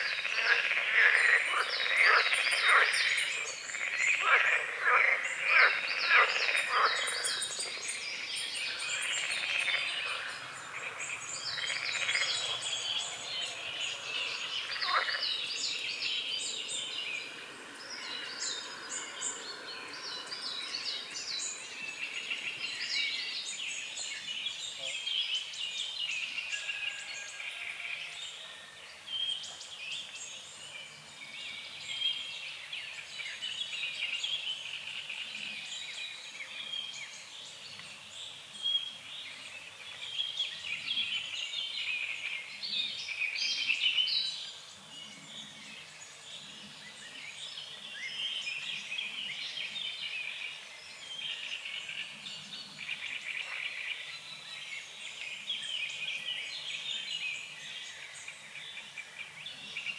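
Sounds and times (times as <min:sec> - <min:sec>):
frog croaks: 0:00.0 - 0:22.9
songbirds chirping: 0:00.0 - 0:59.9.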